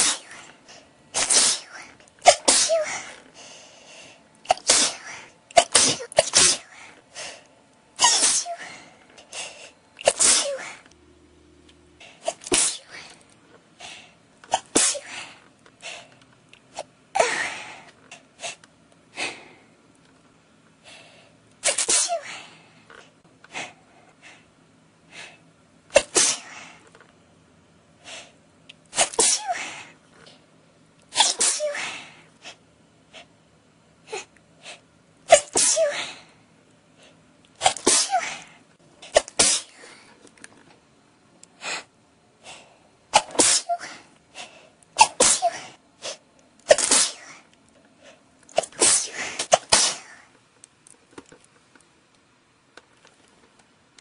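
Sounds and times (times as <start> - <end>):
person sneezing: 0.0 - 3.2, 4.4 - 7.0, 8.0 - 10.9, 12.0 - 13.2, 13.8 - 16.0, 16.7 - 18.6, 21.6 - 22.6, 25.9 - 26.8, 28.9 - 30.0, 31.1 - 32.6, 34.1 - 36.3, 37.6 - 40.1, 43.1 - 47.5, 48.5 - 50.3.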